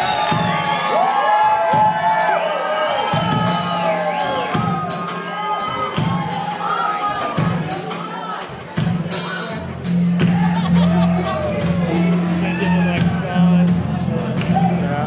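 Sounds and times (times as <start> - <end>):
crowd cheering and whooping: 0.0 - 8.5, 10.2 - 13.5
live band playing: 0.0 - 15.0.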